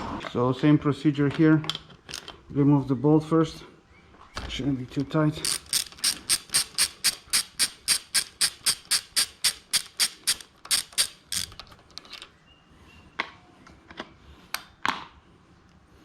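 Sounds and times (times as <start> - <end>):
ratchet wrench clicking: 5.4 - 11.6.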